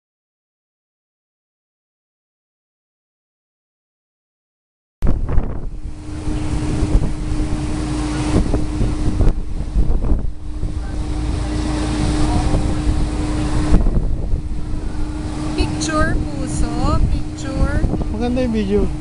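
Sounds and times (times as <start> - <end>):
boat engine drone: 5.0 - 19.0
water rushing past hull: 5.0 - 19.0
wind buffeting microphone: 5.0 - 19.0.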